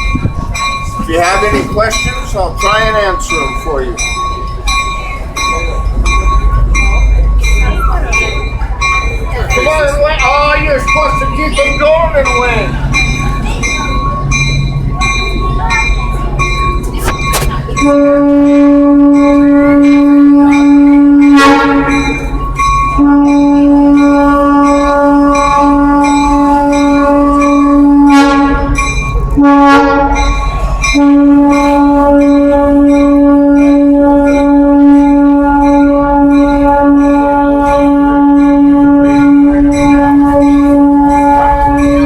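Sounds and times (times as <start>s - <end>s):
rumble of rolling train: 0.0s - 42.0s
train horn blasts: 17.8s - 22.2s, 22.9s - 28.8s, 29.4s - 42.0s.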